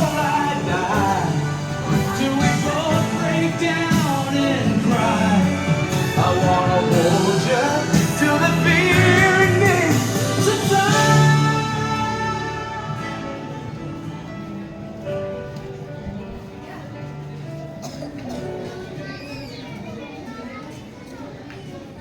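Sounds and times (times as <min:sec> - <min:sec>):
person singing: 0:00.0 - 0:14.2
band accompaniment: 0:00.0 - 0:15.8.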